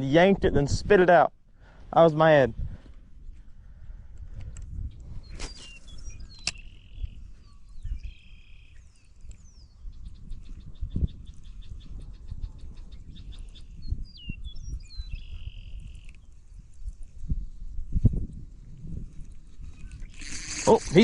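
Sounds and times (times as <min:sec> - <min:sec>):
songbirds singing: 0:04.4 - 0:17.1, 0:19.3 - 0:21.0.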